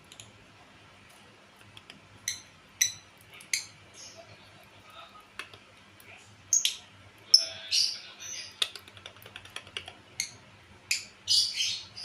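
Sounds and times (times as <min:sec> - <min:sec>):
lovebird chirping: 0:02.2 - 0:04.5, 0:06.5 - 0:08.6, 0:10.2 - 0:12.0
faint clicks: 0:05.3 - 0:06.1.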